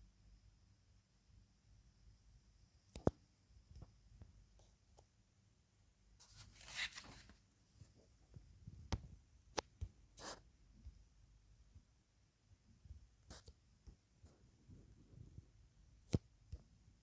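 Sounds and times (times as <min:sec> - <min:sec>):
handling rustle: 0:06.2 - 0:07.5.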